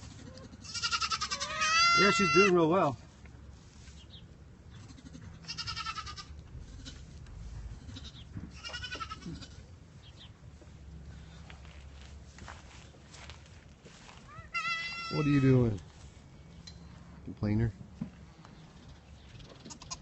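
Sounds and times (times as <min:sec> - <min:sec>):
goats bleating: 0:00.1 - 0:02.6, 0:04.8 - 0:07.1, 0:07.8 - 0:09.7, 0:14.3 - 0:15.7.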